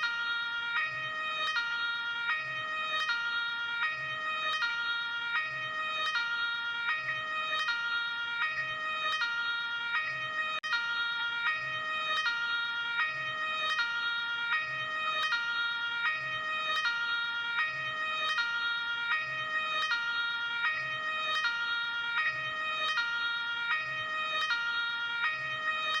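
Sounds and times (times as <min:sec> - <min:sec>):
ambulance two-tone siren: 0:00.0 - 0:26.0.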